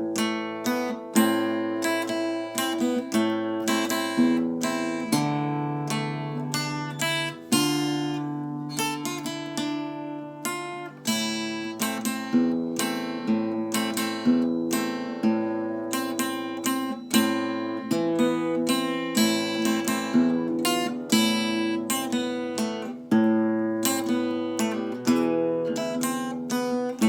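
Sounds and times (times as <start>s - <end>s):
solo acoustic guitar: 0.0s - 27.0s.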